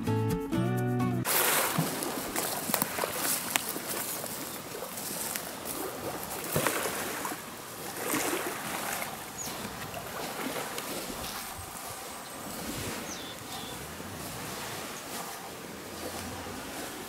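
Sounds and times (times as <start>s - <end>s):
water lapping and sloshing: 1.2s - 17.0s.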